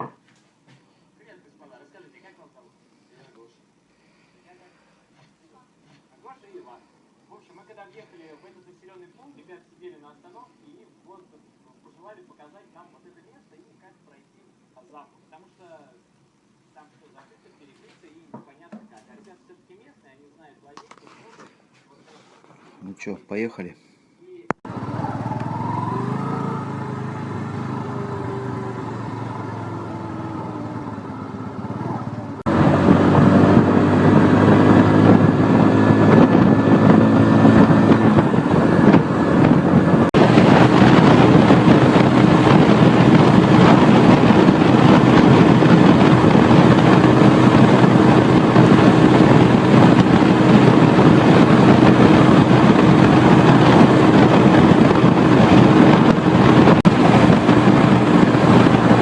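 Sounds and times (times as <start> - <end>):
motorcycle engine: 24.7 - 59.0
wind rushing over microphone: 24.7 - 59.0.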